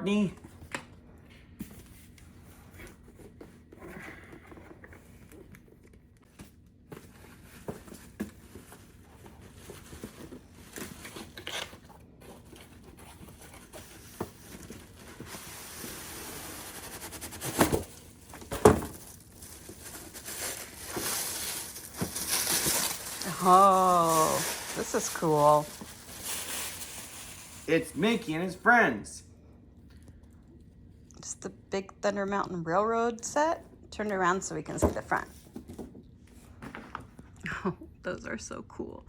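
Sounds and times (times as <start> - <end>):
packaging rustling and tearing: 7.2 - 28.3.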